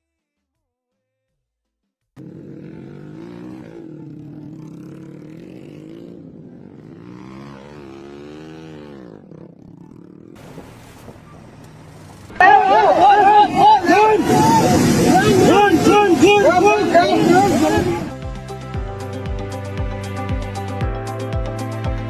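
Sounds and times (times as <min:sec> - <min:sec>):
engine running: 0:09.6 - 0:18.7.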